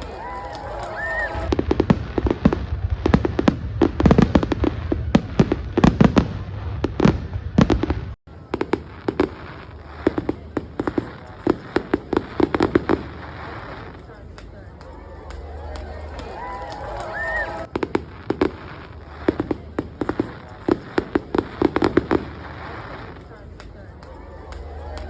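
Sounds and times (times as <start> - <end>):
fireworks bangs and crackling: 0.0 - 25.0.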